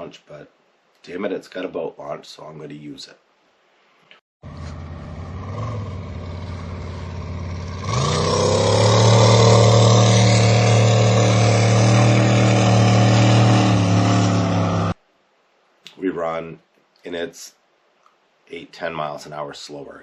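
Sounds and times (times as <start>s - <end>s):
boat engine revving: 4.4s - 15.0s.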